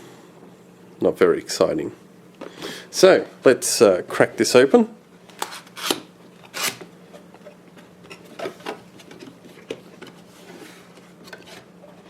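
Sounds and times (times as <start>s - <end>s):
packaging clicks and scrapes: 5.4s - 6.9s.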